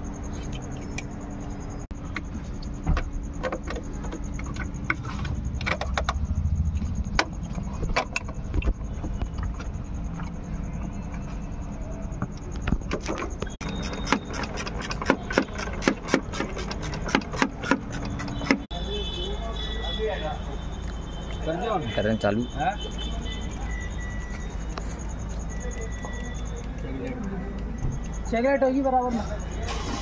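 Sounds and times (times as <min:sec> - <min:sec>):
clicks and knocks of car repair: 0:02.0 - 0:10.4, 0:12.2 - 0:18.7.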